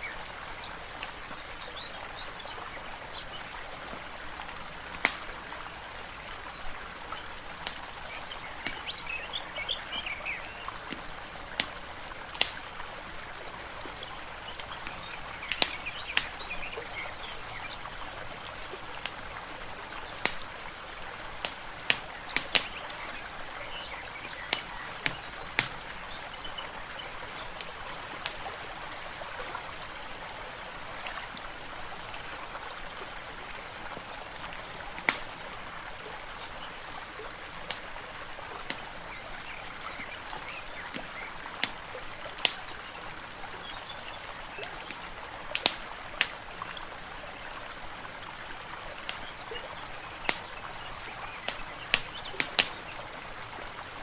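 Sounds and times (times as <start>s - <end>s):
water trickling: 0.0s - 54.0s
wood fire crackling: 4.5s - 5.3s, 20.2s - 26.1s, 34.5s - 35.3s.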